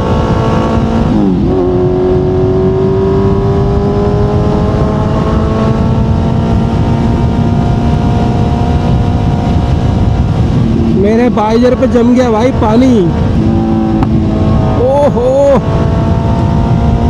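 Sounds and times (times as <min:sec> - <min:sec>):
motorcycle engine revving: 0:00.0 - 0:17.0
wind and road noise: 0:00.0 - 0:17.0.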